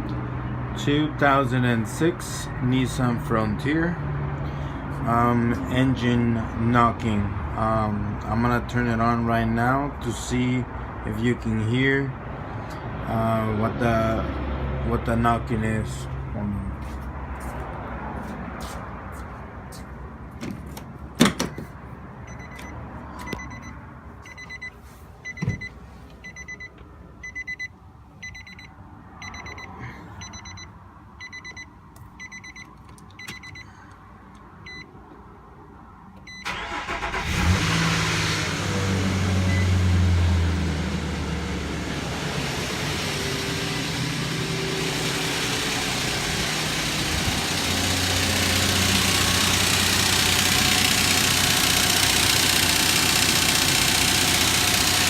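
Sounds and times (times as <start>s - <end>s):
dashboard warning chime beeping: 22.2s - 33.8s, 34.6s - 34.9s, 36.2s - 36.6s
engine cranking starting and idling: 36.3s - 39.2s, 44.8s - 55.0s.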